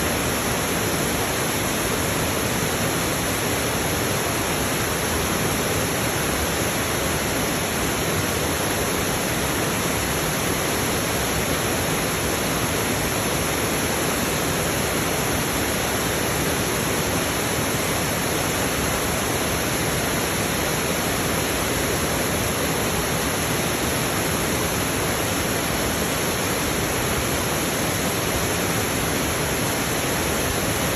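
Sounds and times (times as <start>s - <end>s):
river water rushing: 0.0s - 30.9s.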